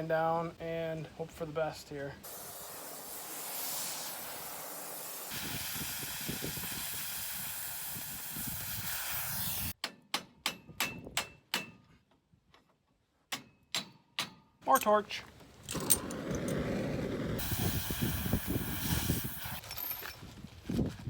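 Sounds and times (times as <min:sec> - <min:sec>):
cutting torch hissing: 0:02.2 - 0:09.8, 0:17.4 - 0:19.6
sharp metallic knocks: 0:09.8 - 0:11.8, 0:13.3 - 0:15.0.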